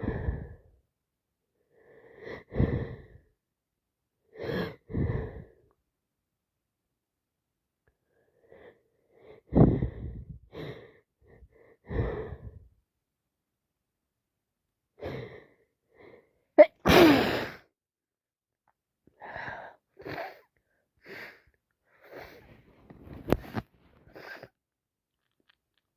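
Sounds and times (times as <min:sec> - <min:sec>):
person sneezing: 0:16.6 - 0:17.7.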